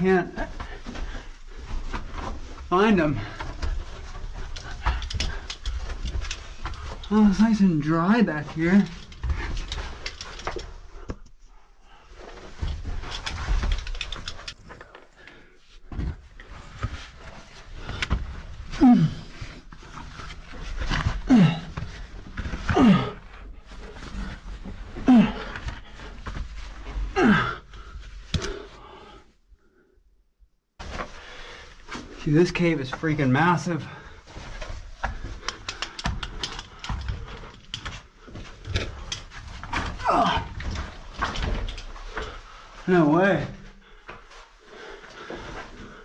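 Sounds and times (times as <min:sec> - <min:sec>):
metal climbing gear knocking: 0:35.0 - 0:38.0.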